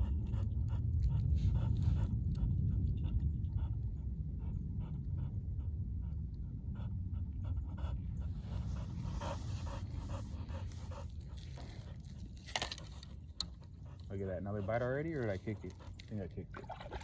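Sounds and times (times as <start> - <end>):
dog panting: 0.0 - 17.0
low wind rumble: 0.0 - 17.0.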